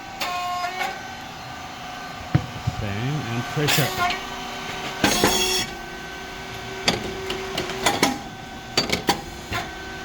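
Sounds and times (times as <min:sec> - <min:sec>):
machine hum: 0:00.9 - 0:08.8.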